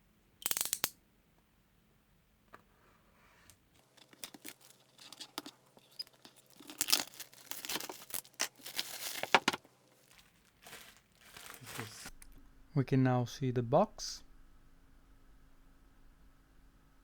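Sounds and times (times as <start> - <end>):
wrapping crinkling and tearing: 3.7 - 12.2.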